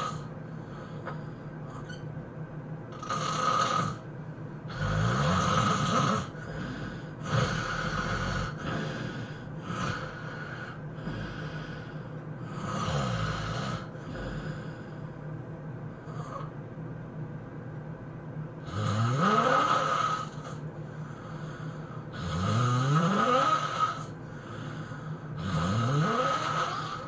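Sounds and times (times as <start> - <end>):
person snoring heavily: 0.0 - 1.1, 2.9 - 4.0, 4.7 - 14.9, 16.1 - 16.5, 18.6 - 27.0.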